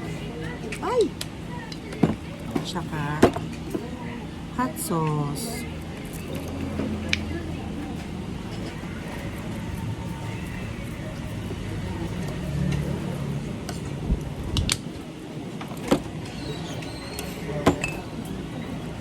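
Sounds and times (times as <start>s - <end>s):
tableware clinking on a table: 17.2s - 18.1s.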